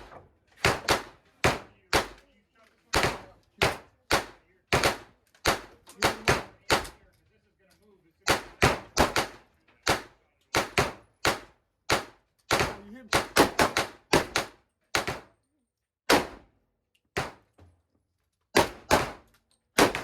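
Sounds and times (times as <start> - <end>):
gunshots echoing indoors: 0.0 - 2.3, 2.9 - 7.0, 8.2 - 15.4, 16.1 - 16.6, 18.5 - 20.0.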